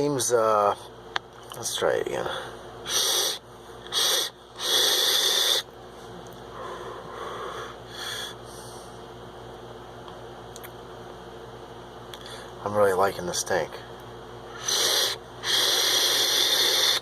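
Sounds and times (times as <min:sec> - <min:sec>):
breathy vape hiss: 0:02.2 - 0:05.7, 0:14.5 - 0:17.0.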